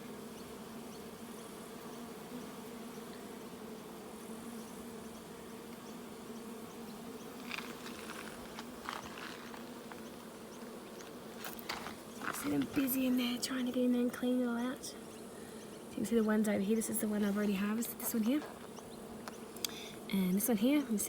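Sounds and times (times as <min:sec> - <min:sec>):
honeybees buzzing: 0:00.0 - 0:21.0
faint short clicks: 0:19.6 - 0:19.8.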